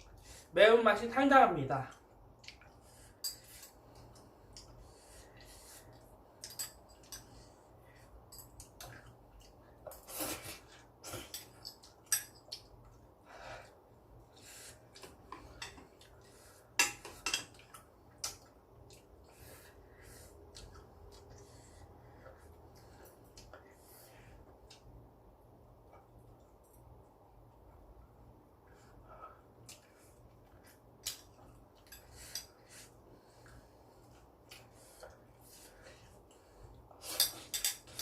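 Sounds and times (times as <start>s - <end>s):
utensils clinking on a dish: 6.4s - 7.4s, 11.2s - 12.5s, 37.0s - 38.0s.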